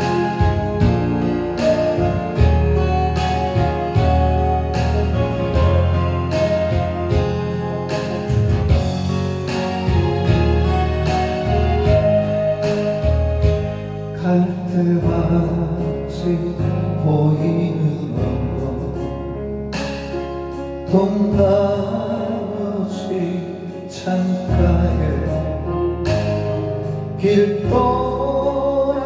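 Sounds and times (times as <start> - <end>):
steady beat: 0.0 - 13.9
sustained melody lines: 0.0 - 23.4
bass: 0.0 - 29.0
slow instrumental ballad: 0.0 - 29.0.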